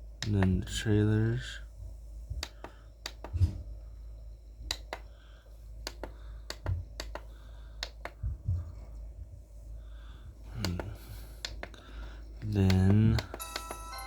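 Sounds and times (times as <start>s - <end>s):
steady low hum: 0.0s - 14.0s
remote control buttons clicking: 2.4s - 3.4s, 4.7s - 5.1s, 5.8s - 8.2s, 10.6s - 11.8s, 12.4s - 14.0s
soft low thumps: 8.0s - 11.7s.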